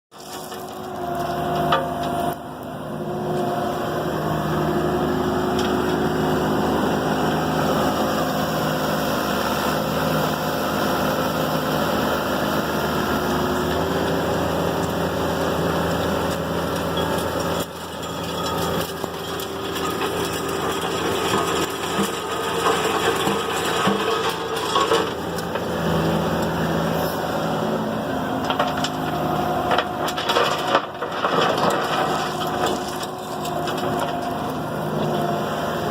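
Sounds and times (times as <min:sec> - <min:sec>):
soil and stones rattling: 0:00.1 - 0:02.2, 0:12.8 - 0:26.7, 0:27.7 - 0:35.6
diesel excavator engine running: 0:00.1 - 0:35.9.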